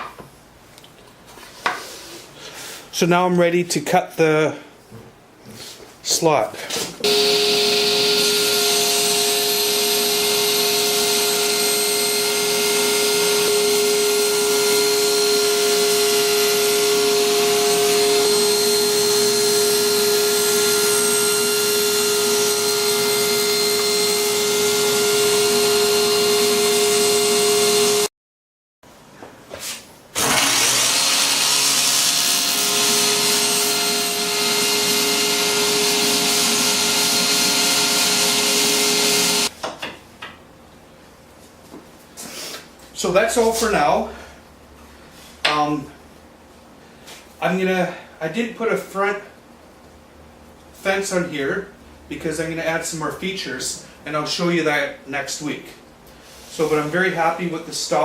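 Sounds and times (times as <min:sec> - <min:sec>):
table saw whining: 0:07.0 - 0:28.1, 0:30.2 - 0:39.5.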